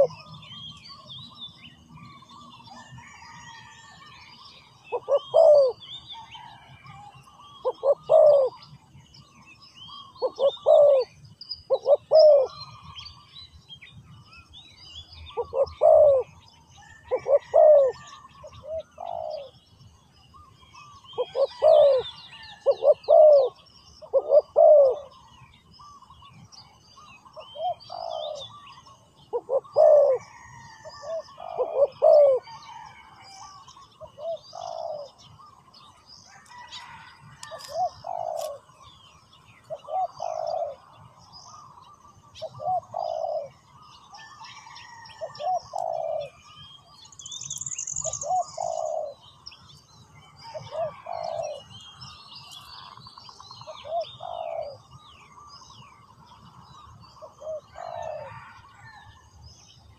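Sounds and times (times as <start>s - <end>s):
dove cooing: 0.0s - 0.3s, 4.9s - 8.6s, 9.9s - 11.1s, 11.7s - 12.8s, 15.3s - 16.4s, 17.0s - 19.6s, 21.2s - 25.2s, 27.4s - 35.5s, 36.4s - 38.7s, 39.7s - 41.7s, 42.3s - 46.4s, 48.1s - 49.2s, 50.4s - 51.7s, 53.7s - 54.9s, 57.2s - 59.0s.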